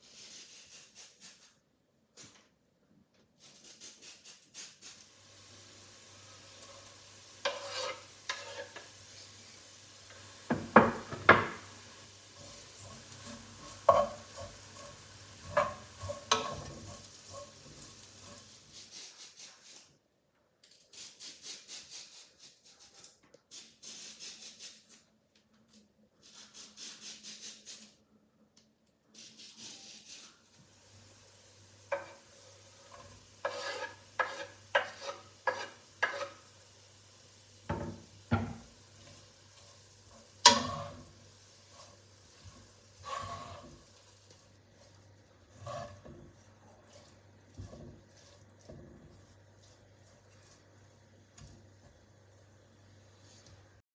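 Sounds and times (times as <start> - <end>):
vegetables sizzling in oil: 3.7 - 19.2, 29.2 - 53.8
spatula scraping and knocking pan: 6.3 - 18.9, 31.8 - 36.6, 37.6 - 53.8.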